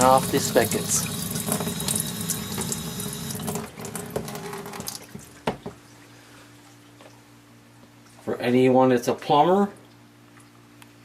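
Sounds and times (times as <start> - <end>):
water running from taps: 0.0 - 5.7.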